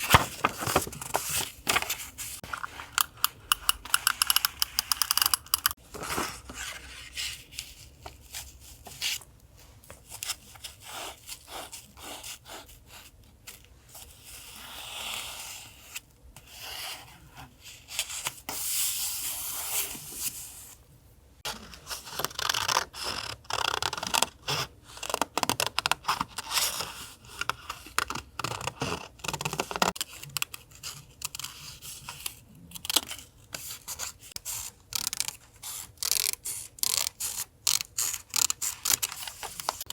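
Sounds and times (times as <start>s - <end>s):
paper crinkling and tapping: 0.0s - 2.9s.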